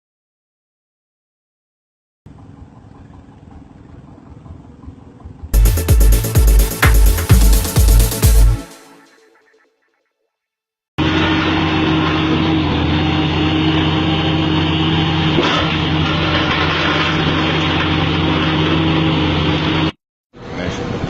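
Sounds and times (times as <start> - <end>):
heavy machine engine running: 11.0 - 21.0.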